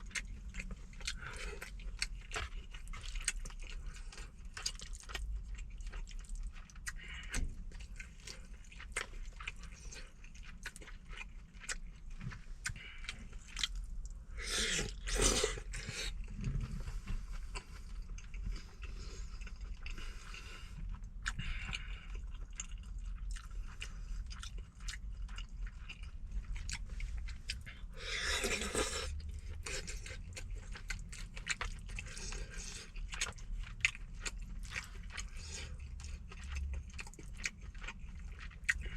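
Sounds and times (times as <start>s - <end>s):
person chewing food: 0.0s - 38.9s.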